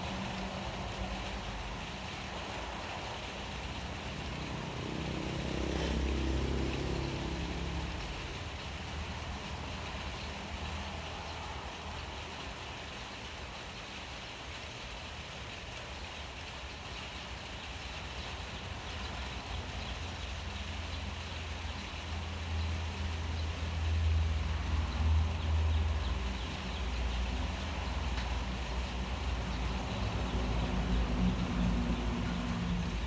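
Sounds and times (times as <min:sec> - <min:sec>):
rain hiss: 0:00.0 - 0:33.0.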